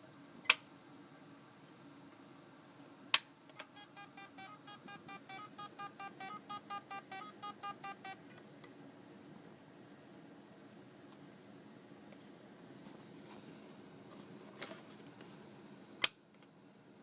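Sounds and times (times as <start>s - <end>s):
hard drive pitched beeps: 3.6s - 8.4s.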